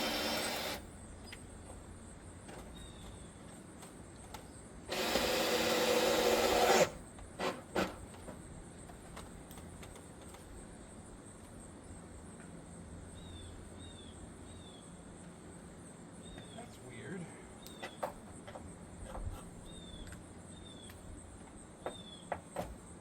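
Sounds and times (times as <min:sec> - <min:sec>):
cordless drill driving into wood: 0:00.0 - 0:00.8, 0:04.9 - 0:08.0.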